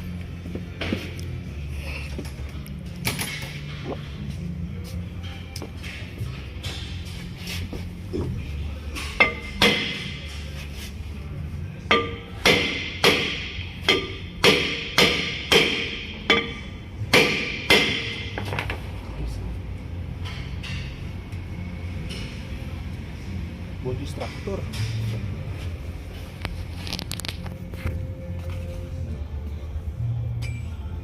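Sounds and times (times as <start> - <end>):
hammer striking metal: 9.1 - 10.2, 11.9 - 18.4.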